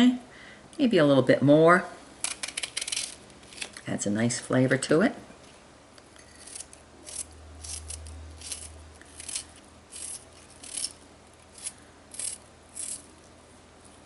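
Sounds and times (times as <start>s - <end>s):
knife cutting onion: 6.3s - 13.1s.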